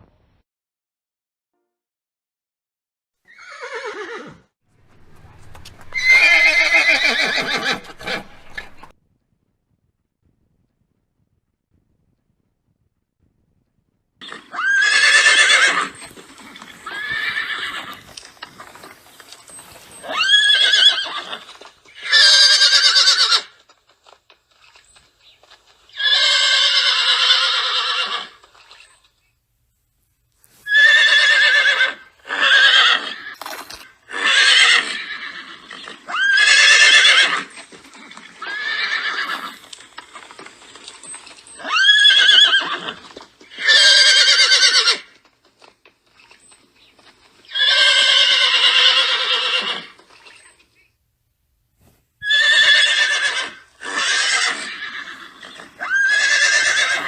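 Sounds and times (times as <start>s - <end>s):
horses neighing: 3.3s - 8.9s, 14.2s - 23.7s, 25.4s - 29.0s, 30.6s - 45.3s, 46.4s - 50.5s, 52.2s - 57.0s.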